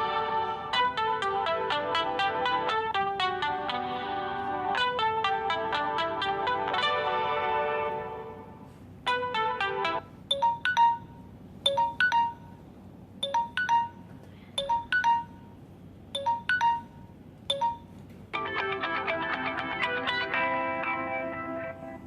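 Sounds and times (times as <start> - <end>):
ringtone with held chords: 0.0 - 12.6, 13.2 - 15.5, 16.2 - 22.0
phone ringtone bright notes: 9.1 - 12.6, 13.2 - 15.5, 16.2 - 18.0.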